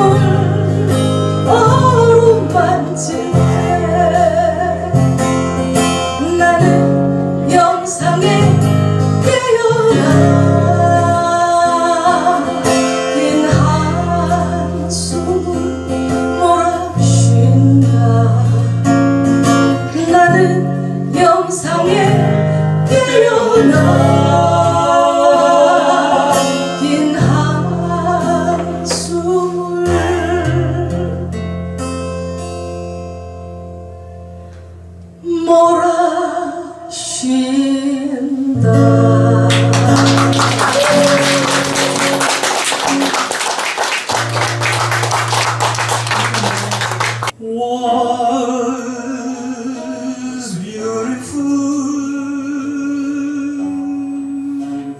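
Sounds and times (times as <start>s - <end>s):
strummed guitar: 0.0s - 35.2s, 38.5s - 47.4s
person singing: 6.1s - 18.8s, 19.7s - 31.2s, 35.2s - 54.9s.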